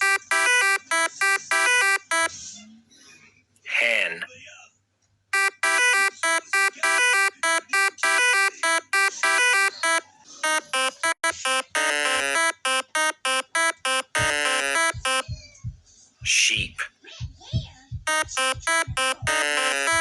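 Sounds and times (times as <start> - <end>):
electronic buzzy melody: 0.0 - 2.3, 5.4 - 15.2, 18.1 - 20.0.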